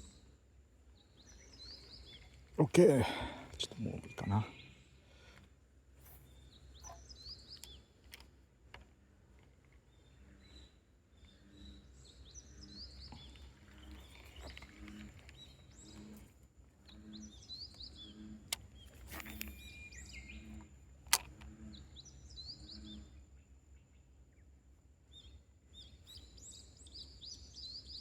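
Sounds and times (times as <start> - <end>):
small birds chirping: 0.0 - 24.5, 25.1 - 28.0
sharp clicks: 21.0 - 21.5.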